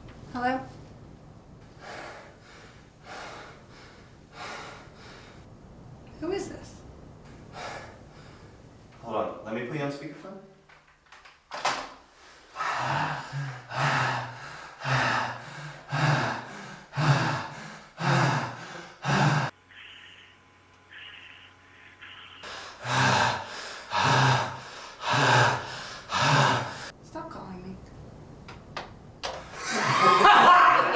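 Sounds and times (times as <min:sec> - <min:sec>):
heavy breathing: 0:01.6 - 0:05.5, 0:07.2 - 0:08.9, 0:12.2 - 0:19.5, 0:22.4 - 0:27.0.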